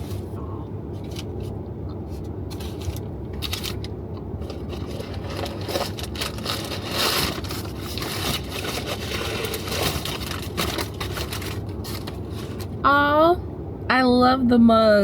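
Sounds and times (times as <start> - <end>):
steady low hum: 0.0 - 15.0
wrapping crinkling and rustling: 2.5 - 12.8.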